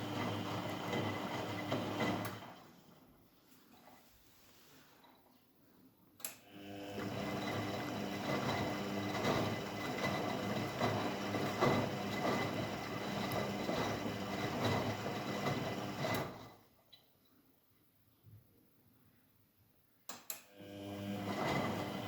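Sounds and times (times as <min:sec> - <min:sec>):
washing machine running: 0:00.0 - 0:03.0, 0:06.5 - 0:16.7, 0:20.6 - 0:22.0.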